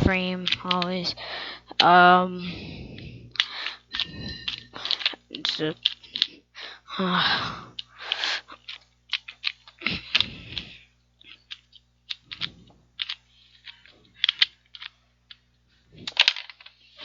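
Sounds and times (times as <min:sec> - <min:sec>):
plastic puzzle cube clicking: 0:11.4 - 0:15.4.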